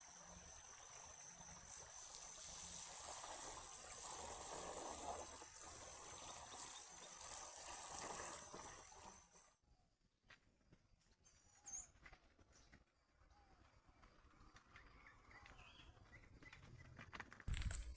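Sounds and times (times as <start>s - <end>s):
river water trickling: 0.0s - 9.5s
bird chirp: 14.5s - 17.0s.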